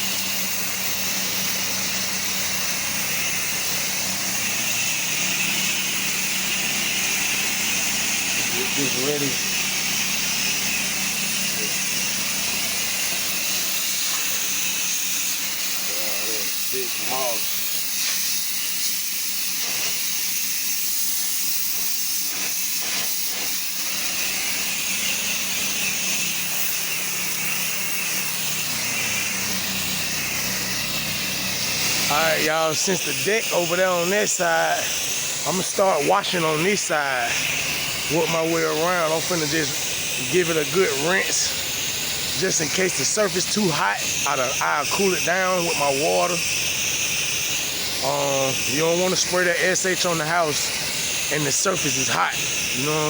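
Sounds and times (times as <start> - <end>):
pressure washer engine running: 0.0 - 53.0.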